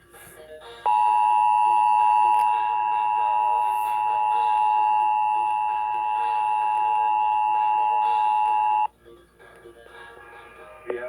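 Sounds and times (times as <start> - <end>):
two-tone emergency alert signal: 0.9 - 8.9.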